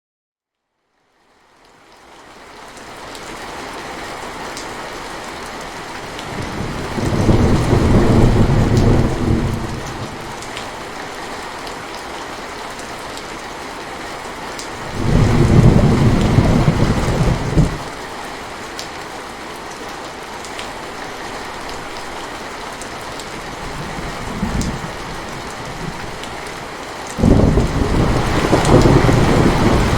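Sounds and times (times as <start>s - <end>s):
steady rain: 0.9s - 29.9s
rolling thunder: 6.3s - 10.6s, 14.8s - 17.9s, 27.2s - 29.9s.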